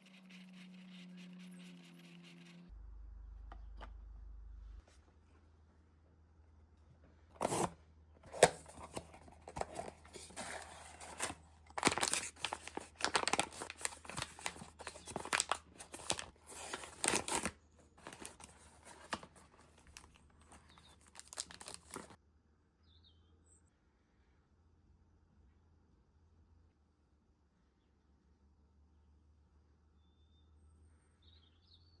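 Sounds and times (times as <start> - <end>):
packaging tearing and crinkling: 8.3 - 22.2.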